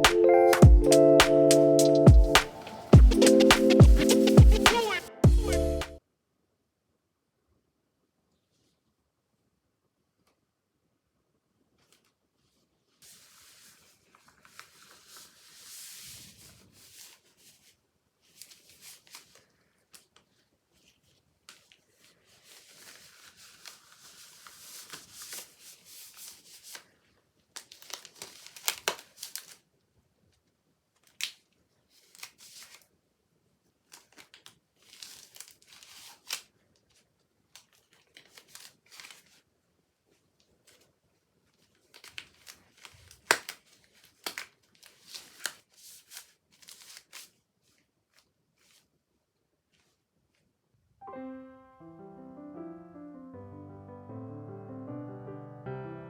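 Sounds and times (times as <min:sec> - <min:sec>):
crinkling and rustling: 0:11.7 - 0:33.0, 0:33.6 - 0:50.6.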